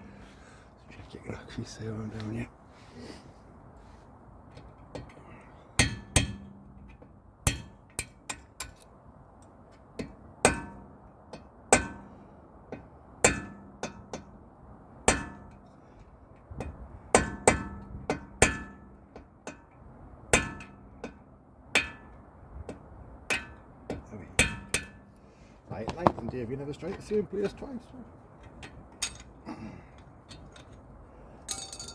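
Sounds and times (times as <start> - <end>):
hammer striking metal: 24.4 - 25.0.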